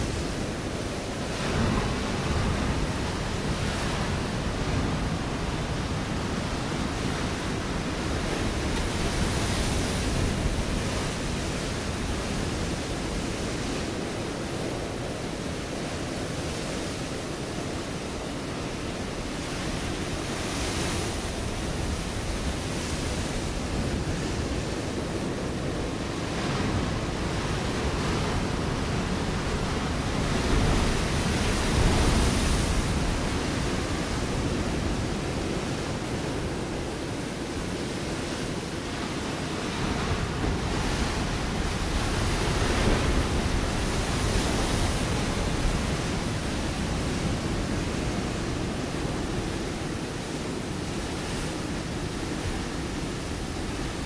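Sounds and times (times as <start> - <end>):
waves breaking on rocks: 25.7 - 54.0.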